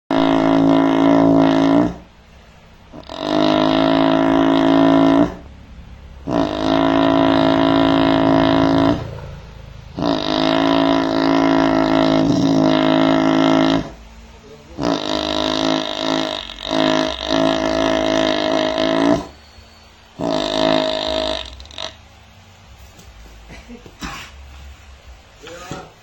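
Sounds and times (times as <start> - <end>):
cow snoring: 0.1 - 2.2, 2.9 - 19.6, 20.2 - 22.1.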